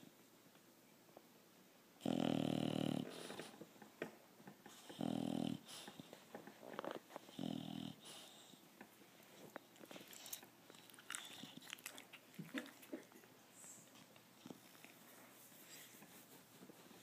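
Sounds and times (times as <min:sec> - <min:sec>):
dog snoring: 0:02.0 - 0:03.5, 0:04.7 - 0:06.0, 0:07.2 - 0:08.6.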